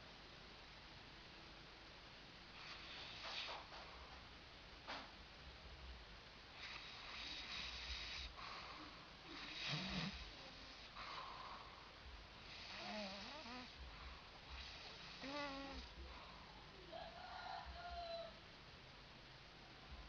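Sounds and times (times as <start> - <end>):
person snoring: 6.6 - 11.0, 12.5 - 13.8, 14.5 - 16.1.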